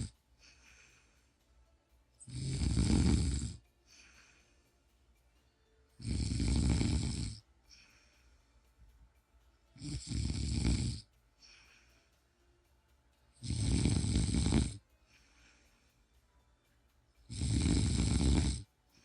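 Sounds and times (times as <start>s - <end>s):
person snoring: 0.0s - 1.1s, 2.2s - 4.4s, 6.0s - 8.0s, 9.8s - 11.8s, 13.4s - 14.8s, 17.3s - 18.7s
faint breathing: 0.0s - 19.0s.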